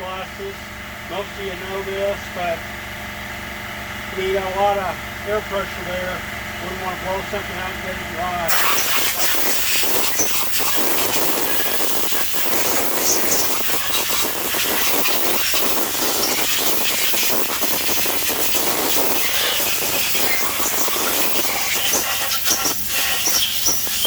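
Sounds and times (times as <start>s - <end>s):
air blow gun hissing: 8.5s - 24.0s.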